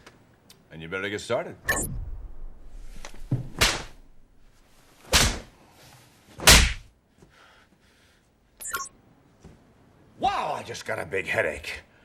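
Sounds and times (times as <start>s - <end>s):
heavy body blows: 1.9s - 5.5s.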